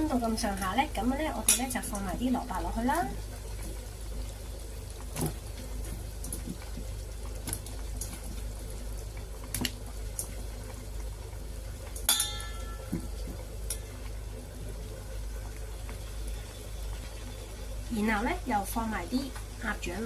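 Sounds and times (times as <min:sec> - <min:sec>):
low steady hum: 0:00.0 - 0:20.0
utensils clinking against a pot: 0:01.4 - 0:02.0, 0:12.1 - 0:13.0
ringing metal clink: 0:12.1 - 0:12.8.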